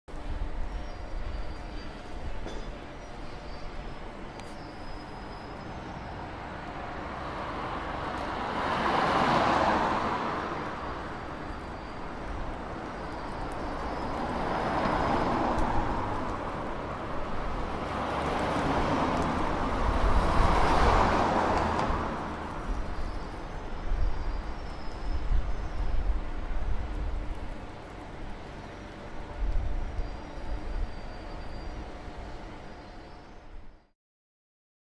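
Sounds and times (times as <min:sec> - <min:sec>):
constant traffic hum: 0:00.1 - 0:33.9
cars passing: 0:05.1 - 0:23.8.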